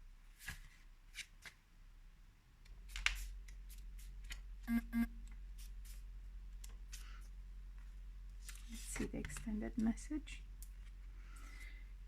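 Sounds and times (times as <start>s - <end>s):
short low beeps: 4.7s - 5.1s
cards and paper swishing: 8.4s - 9.4s.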